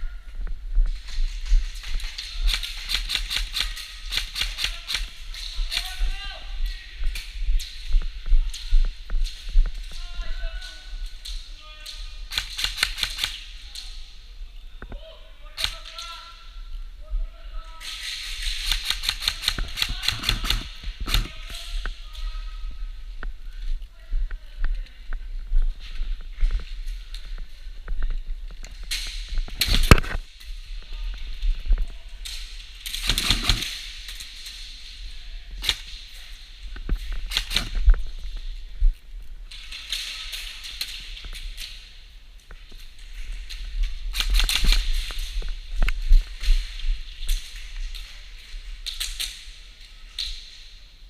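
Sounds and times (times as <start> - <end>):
airsoft guns popping: 1.6 - 5.9, 11.2 - 13.9, 17.8 - 21.9, 32.2 - 34.6, 35.6 - 38.1, 44.0 - 46.0
fast crackling of gunfire: 1.7 - 5.2, 12.3 - 13.4, 18.3 - 21.3, 32.8 - 34.0, 37.2 - 38.0, 44.1 - 45.3
airsoft gun rapid fire: 2.4 - 5.1, 12.3 - 13.4, 18.4 - 21.3, 32.9 - 33.8, 37.3 - 37.8
loud crack: 32.8 - 34.2.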